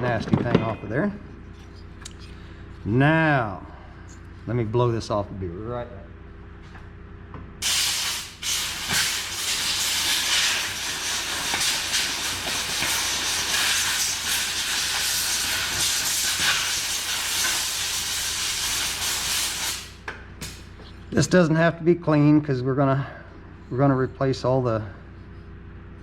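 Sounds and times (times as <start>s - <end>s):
compressed air hissing from nozzle: 7.6s - 20.6s.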